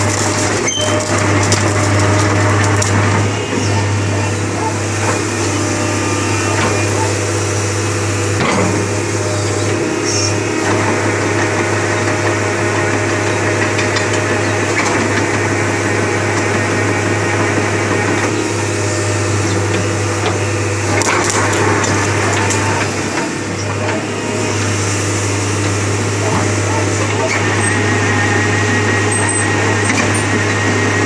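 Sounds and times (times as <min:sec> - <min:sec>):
excavator diesel engine running: 0:00.0 - 0:31.0.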